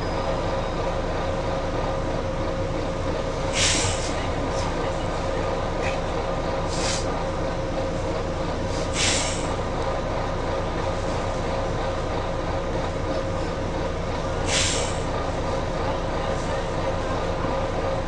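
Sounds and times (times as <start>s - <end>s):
bus diesel engine drone: 0.0s - 18.0s
compressed air hisses: 3.5s - 4.2s, 6.7s - 7.1s, 8.7s - 9.5s, 14.5s - 15.0s.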